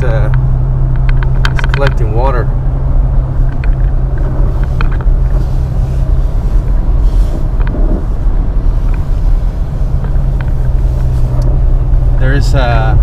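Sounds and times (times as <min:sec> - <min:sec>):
car engine and road noise: 0:00.0 - 0:13.0
light ticks: 0:10.0 - 0:11.6.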